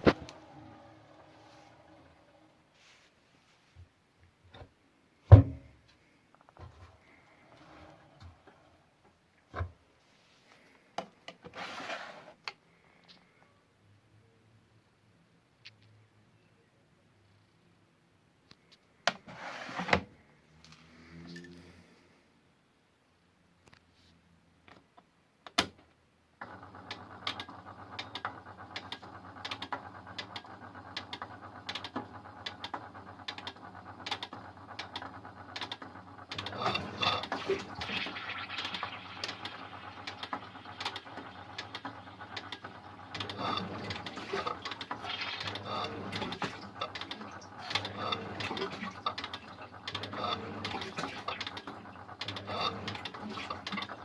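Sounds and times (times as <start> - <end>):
washing machine humming: 0.0 - 3.0, 6.6 - 9.8, 26.4 - 54.0.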